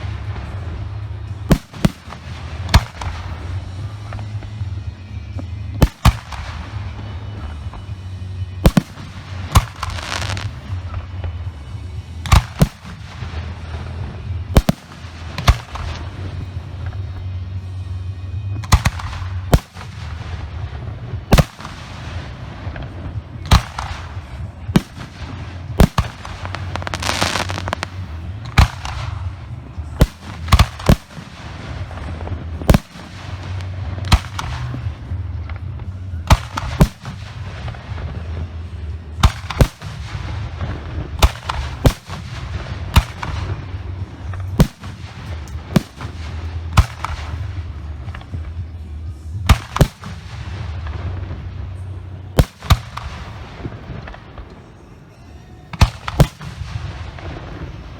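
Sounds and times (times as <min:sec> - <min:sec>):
fireworks hissing and crackling: 0:00.0 - 0:57.9
firework shells bursting: 0:08.6 - 0:11.4, 0:18.6 - 0:35.7.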